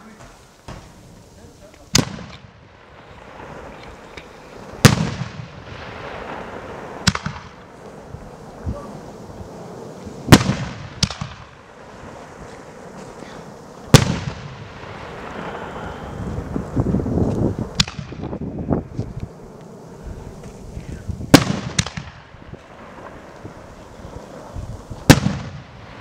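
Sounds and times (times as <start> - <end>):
firework bangs: 0.0 - 26.0
hiss and rumble: 0.0 - 26.0.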